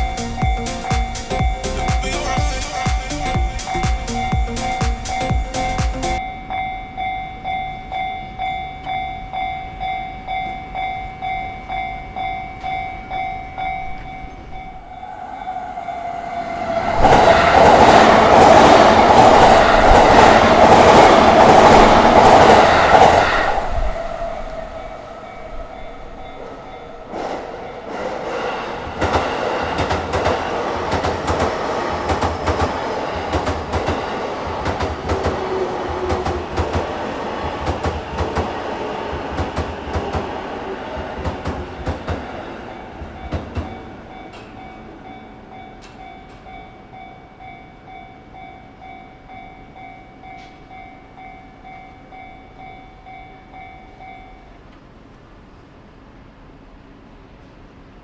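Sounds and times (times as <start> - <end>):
level-crossing warning bell: 0.0 - 37.2, 42.5 - 54.8
rush of passing train: 0.0 - 58.0.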